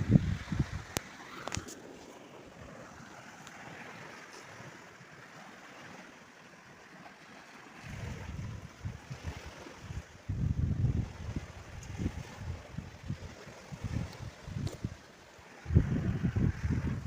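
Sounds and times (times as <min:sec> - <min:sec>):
strong wind blowing: 0:00.0 - 0:01.7, 0:07.8 - 0:17.0
wind buffeting microphone: 0:00.0 - 0:01.8, 0:07.8 - 0:17.0
river water rushing: 0:00.0 - 0:17.0.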